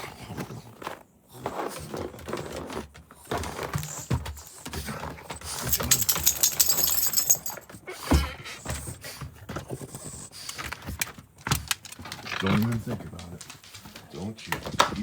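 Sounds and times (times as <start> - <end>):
footsteps and shuffling: 0.3 - 15.0
high metallic jingling: 5.5 - 7.7.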